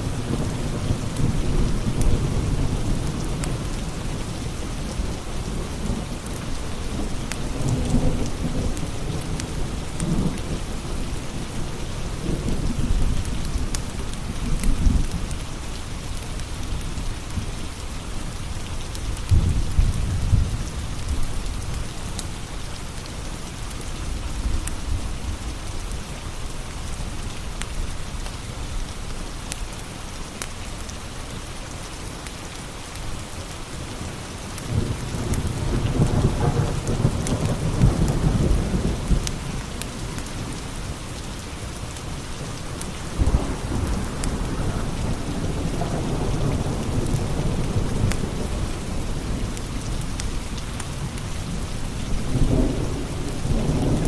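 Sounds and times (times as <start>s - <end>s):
low rolling thunder: 0.0s - 15.2s, 19.3s - 21.5s, 34.7s - 41.0s, 42.2s - 54.0s
steady rain: 0.0s - 54.0s.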